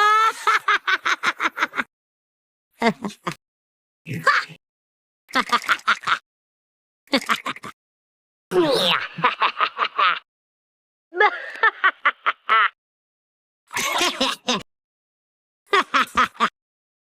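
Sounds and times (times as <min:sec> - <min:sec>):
cartoon character giggling: 0:02.8 - 0:03.4, 0:15.7 - 0:16.5.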